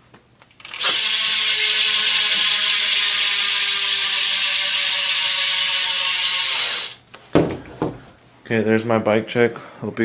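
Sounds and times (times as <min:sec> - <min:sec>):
bike hub freewheel buzz: 0:00.6 - 0:07.0.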